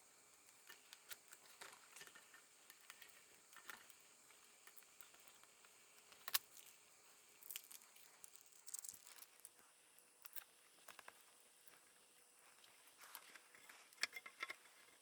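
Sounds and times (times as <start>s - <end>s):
rustling of small parts: 0.6s - 9.5s.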